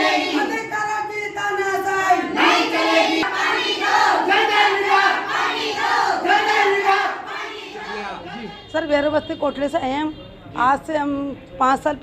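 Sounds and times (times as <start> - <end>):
crowd chanting slogans: 0.0 - 0.5, 2.0 - 8.7.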